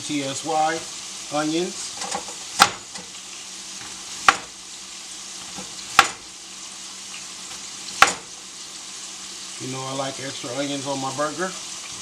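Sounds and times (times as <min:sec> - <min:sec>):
meat sizzling in a frying pan: 0:00.0 - 0:12.0
sharp knocks: 0:06.0 - 0:06.2, 0:08.0 - 0:08.3.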